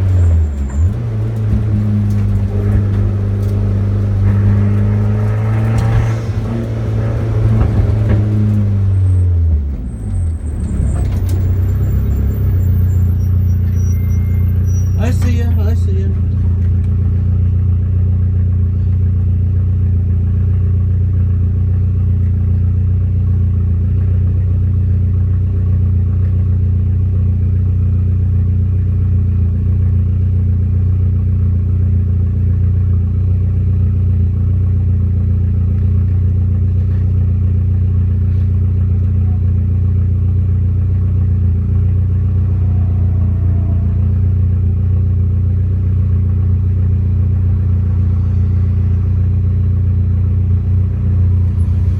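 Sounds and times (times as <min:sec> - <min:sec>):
car engine and road noise: 0:00.0 - 0:51.9.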